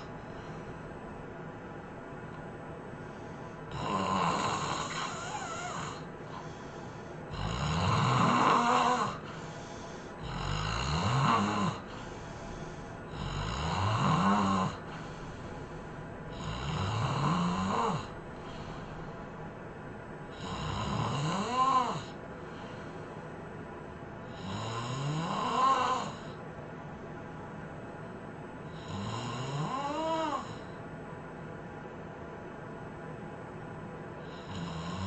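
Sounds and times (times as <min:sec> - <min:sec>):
quiet breaths: 0:00.0 - 0:35.0
person snoring heavily: 0:03.7 - 0:19.2, 0:20.3 - 0:22.8, 0:24.3 - 0:26.4, 0:28.7 - 0:30.7, 0:34.2 - 0:35.0.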